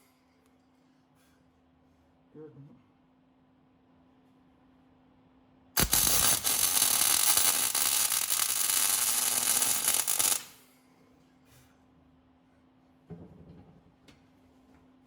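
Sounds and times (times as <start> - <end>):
welding arc crackling: 5.8 - 10.6.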